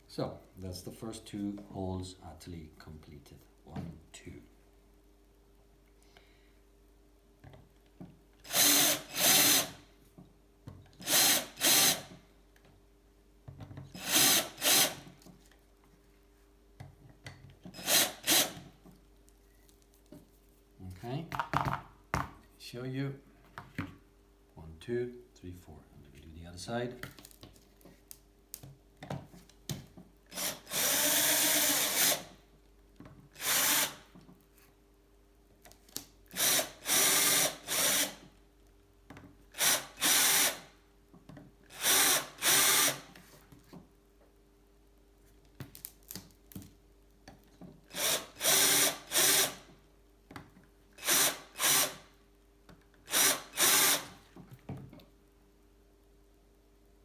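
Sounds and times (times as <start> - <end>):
electric drill drilling: 8.5 - 9.8, 11.0 - 12.1, 14.0 - 15.0, 17.8 - 18.6, 30.3 - 32.3, 33.4 - 34.0, 36.4 - 38.2, 39.6 - 40.7, 41.7 - 43.1, 47.9 - 49.6, 51.0 - 52.0, 53.1 - 54.2.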